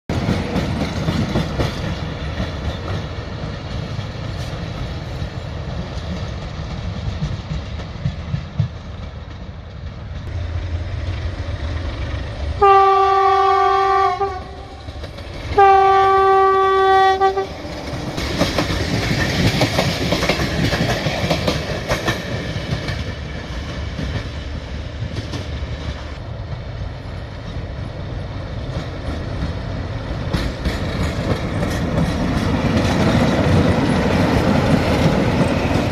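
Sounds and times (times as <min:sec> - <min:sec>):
diesel locomotive rumbling: 0:00.1 - 0:35.9
train clattering along rails: 0:00.1 - 0:35.9
locomotive horn blasts: 0:12.6 - 0:14.8, 0:15.6 - 0:17.6.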